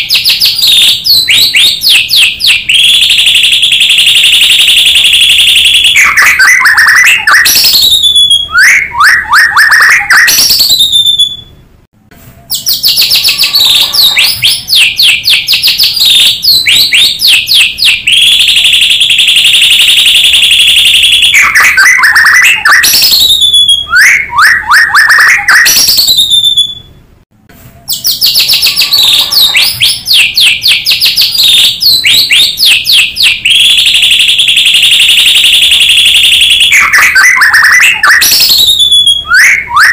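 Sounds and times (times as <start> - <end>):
bird singing whistles: 0.0 - 2.6, 6.0 - 11.6, 12.4 - 18.3, 21.5 - 26.9, 27.8 - 33.4, 36.8 - 39.9.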